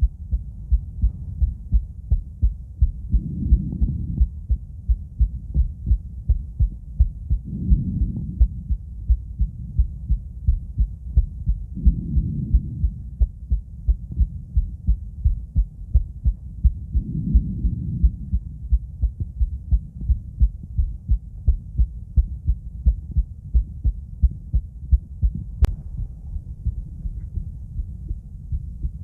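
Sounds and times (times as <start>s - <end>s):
heartbeat thumps: 0.0s - 29.0s
soft whooshing breathing: 16.9s - 18.5s.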